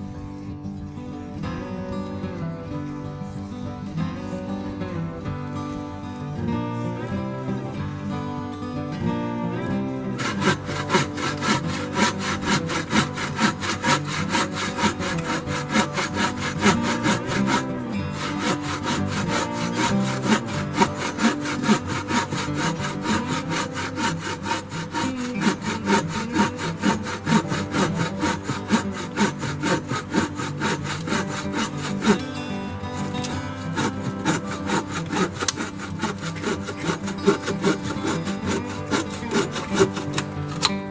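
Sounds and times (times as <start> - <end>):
hand saw cutting wood: 9.9 - 40.9.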